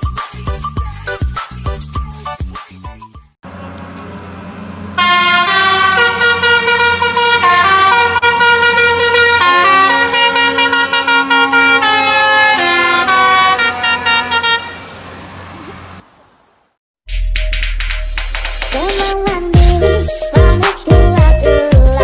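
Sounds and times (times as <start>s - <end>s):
truck air horn: 5.0s - 15.0s.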